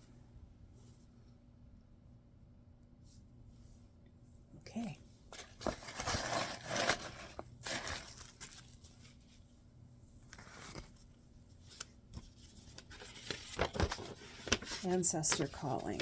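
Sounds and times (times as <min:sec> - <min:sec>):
paper and packaging rustling: 0:05.3 - 0:09.4, 0:10.2 - 0:16.0.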